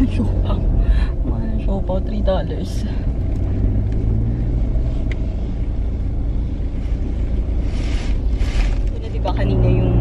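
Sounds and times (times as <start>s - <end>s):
car engine and road rumble: 0.0s - 10.0s.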